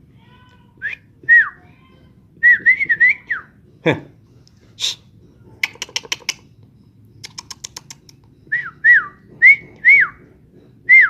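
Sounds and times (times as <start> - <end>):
sharp dry clicks: 5.6 - 6.4, 7.2 - 8.3.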